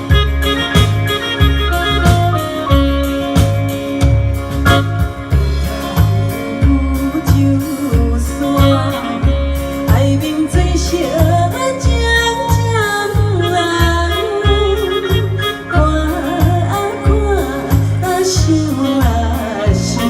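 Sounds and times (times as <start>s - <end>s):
pop backing track with bass beat: 0.0s - 20.0s
woman singing: 6.3s - 20.0s.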